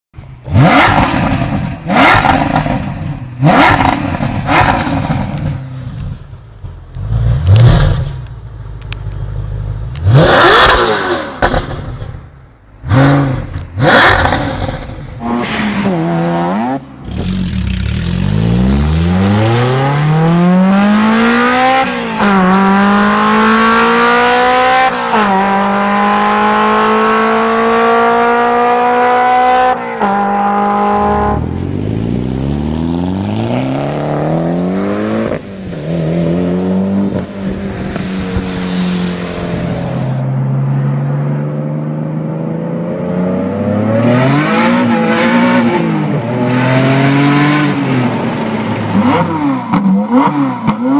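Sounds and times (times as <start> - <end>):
car engine accelerating hard: 12.8 - 50.9.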